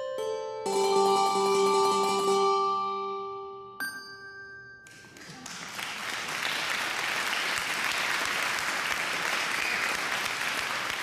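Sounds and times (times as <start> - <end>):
audience applauding: 4.9 - 11.0.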